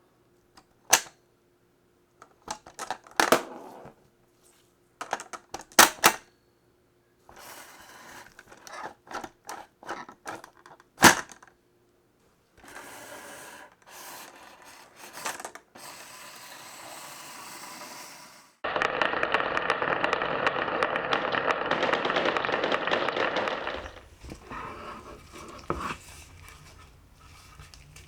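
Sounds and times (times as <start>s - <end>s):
marbles rolling on wooden tracks: 18.8s - 28.0s.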